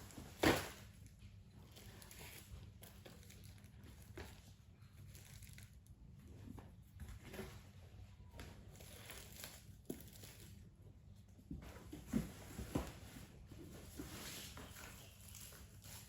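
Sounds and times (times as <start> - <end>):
packaging crinkling and rustling: 1.7 - 5.9.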